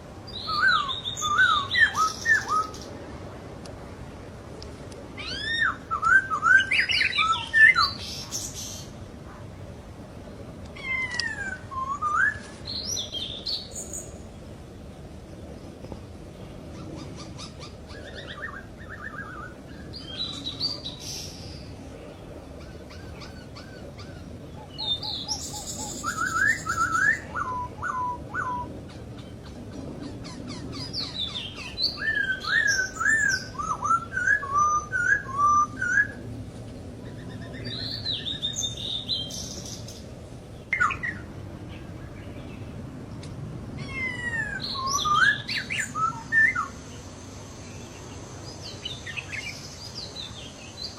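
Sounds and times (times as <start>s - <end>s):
laughingthrush calling: 16.7s - 21.7s, 22.5s - 36.2s, 43.8s - 47.9s.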